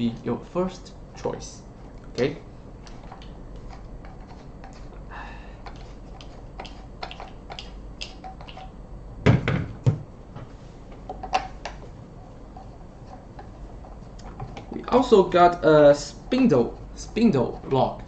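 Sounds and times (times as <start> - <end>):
loud thunks: 9.2 - 10.1.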